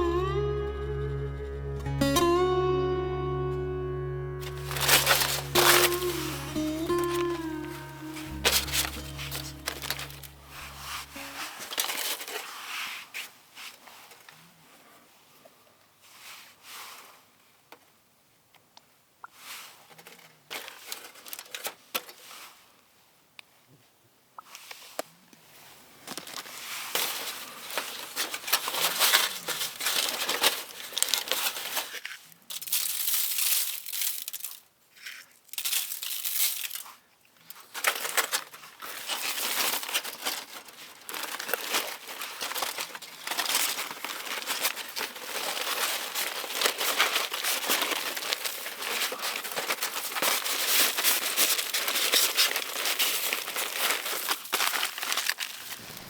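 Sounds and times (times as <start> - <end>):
packaging crinkling: 4.4 - 12.6, 26.0 - 56.0.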